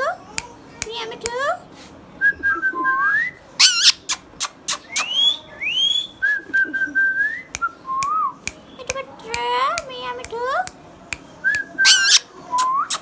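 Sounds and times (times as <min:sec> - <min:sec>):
parakeet screeching and whistling: 0:03.6 - 0:06.2, 0:11.8 - 0:13.0.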